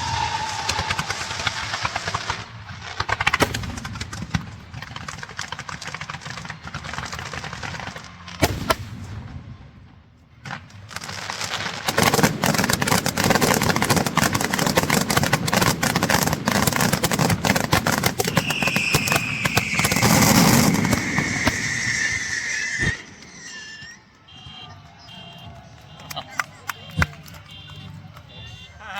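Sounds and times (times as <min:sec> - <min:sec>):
high descending whistle: 0:00.0 - 0:01.6, 0:18.3 - 0:25.4
firecrackers crackling: 0:00.0 - 0:28.9.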